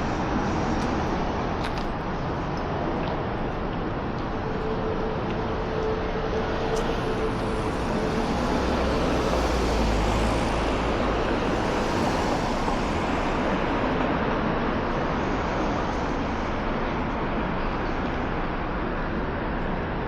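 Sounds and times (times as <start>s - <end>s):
road traffic: 0.0s - 20.0s.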